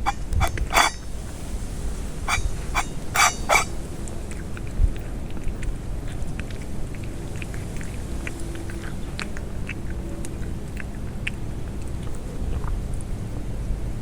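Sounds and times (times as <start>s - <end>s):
faint low squeaks: 0.0s - 1.1s, 2.3s - 3.7s.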